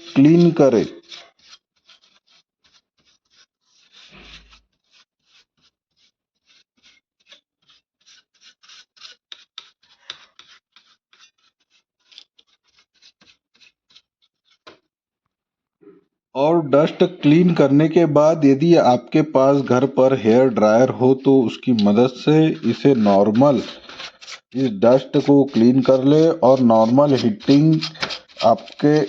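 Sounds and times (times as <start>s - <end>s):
brush scrubbing dust: 0.0s - 14.6s, 16.8s - 29.0s.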